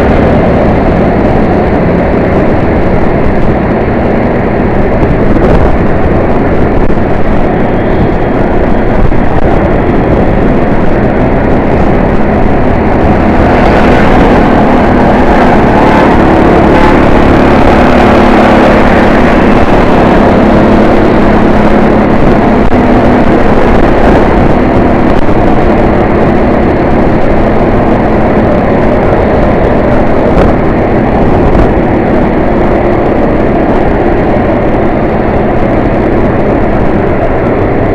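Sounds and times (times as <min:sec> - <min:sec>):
busy road traffic: 0:00.0 - 0:37.9
low engine hum: 0:00.0 - 0:37.9.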